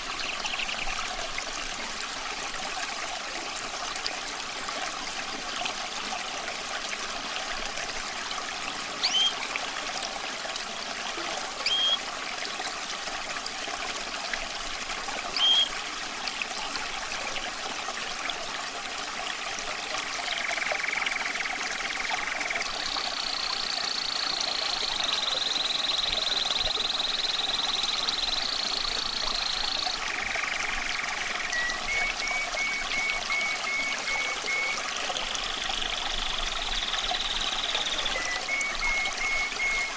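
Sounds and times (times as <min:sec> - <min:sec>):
water trickling: 0:00.0 - 0:39.9
songbird singing: 0:09.0 - 0:09.4, 0:11.6 - 0:12.0, 0:15.4 - 0:15.7, 0:20.3 - 0:39.9.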